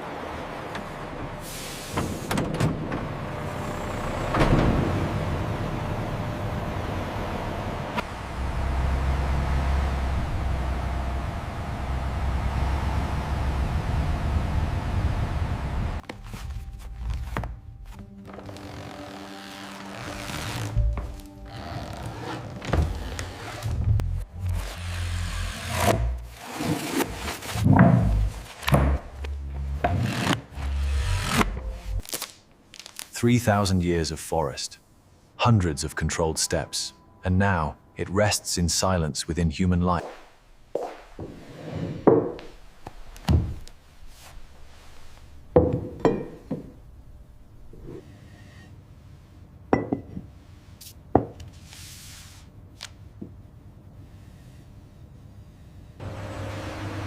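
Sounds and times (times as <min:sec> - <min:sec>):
steady low hum: 0:02.8 - 0:17.8
tableware knocking on wooden table: 0:42.0 - 0:42.4, 0:45.6 - 0:46.7, 0:49.8 - 0:50.3.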